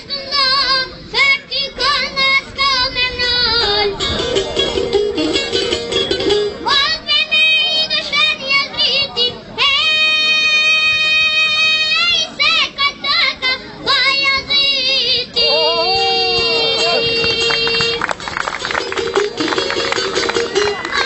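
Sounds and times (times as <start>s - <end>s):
boy singing with vibrato: 0.0s - 4.9s, 6.3s - 18.0s
instrumental accompaniment: 3.2s - 7.5s, 16.4s - 21.0s.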